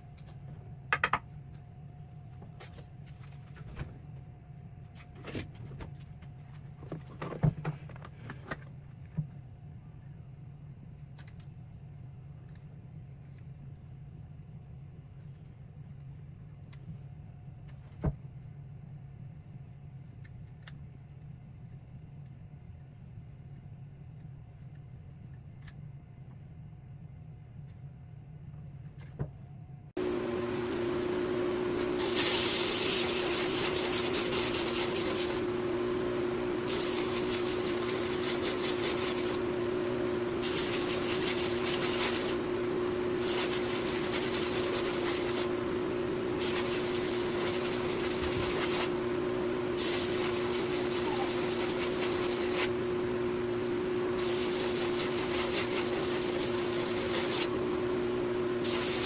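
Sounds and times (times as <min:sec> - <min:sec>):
bench grinder humming: 0:30.0 - 0:59.0
steel grinding rasp: 0:30.0 - 0:59.0.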